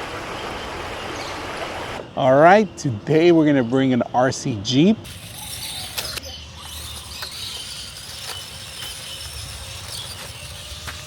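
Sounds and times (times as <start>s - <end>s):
toy electric motor whining: 5.0s - 11.0s.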